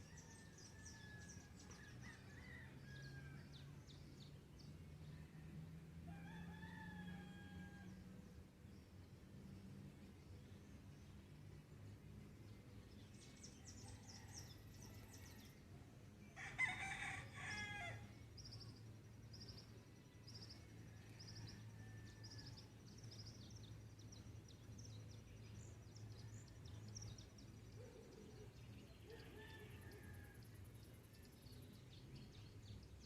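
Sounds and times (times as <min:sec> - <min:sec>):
rooster crowing: 0:06.1 - 0:07.9, 0:16.4 - 0:18.0.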